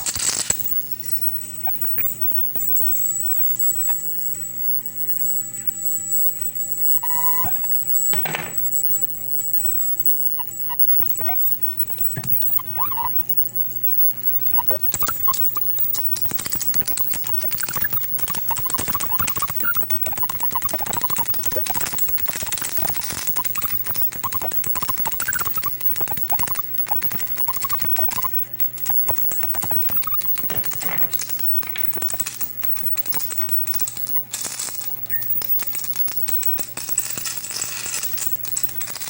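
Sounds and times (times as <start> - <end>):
high-voltage discharge crackling: 0.0 - 39.0
steady low hum: 0.0 - 39.0
wavering whistles: 0.0 - 39.0.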